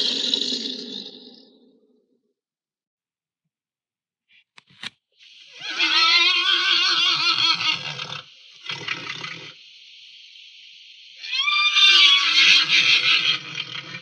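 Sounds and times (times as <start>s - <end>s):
creature roar: 0.0s - 1.7s, 11.2s - 14.0s
steady high hiss: 5.2s - 13.7s.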